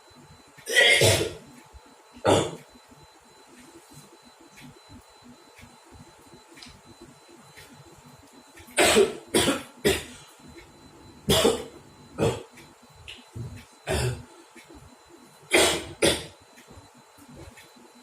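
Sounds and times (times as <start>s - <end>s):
person coughing: 0.6s - 1.4s, 2.2s - 2.6s, 8.8s - 10.2s, 11.3s - 12.5s, 13.8s - 14.2s, 15.5s - 16.3s.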